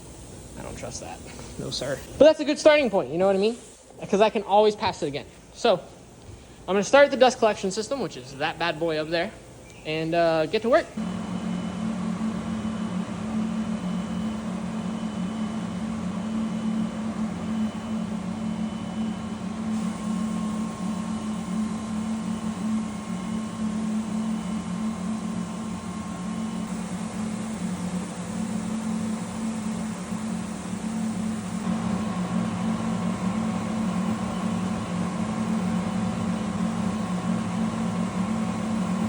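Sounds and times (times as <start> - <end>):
thin steady whines: 0.0 - 39.0
belt sander machine hum: 10.2 - 39.0.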